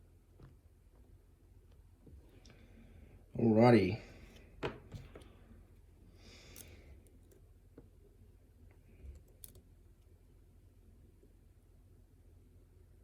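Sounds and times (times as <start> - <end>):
soft breath: 2.2 - 3.3, 5.2 - 7.2.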